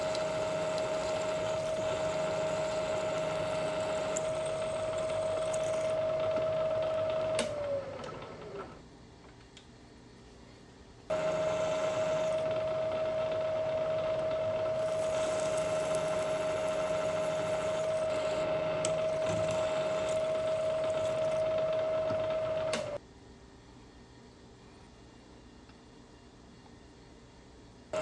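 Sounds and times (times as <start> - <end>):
milling machine drilling steel: 0.0 - 6.0, 14.8 - 21.4.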